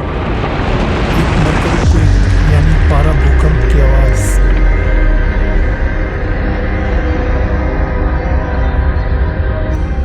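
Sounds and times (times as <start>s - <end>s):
eerie ambient drone: 0.0s - 10.0s
deep rumble: 0.8s - 10.0s.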